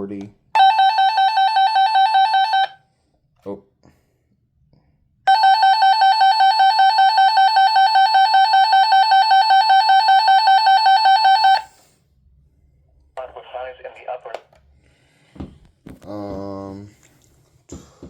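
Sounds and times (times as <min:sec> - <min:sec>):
warbling electronic alarm tone: 0:00.6 - 0:02.8, 0:05.3 - 0:11.7.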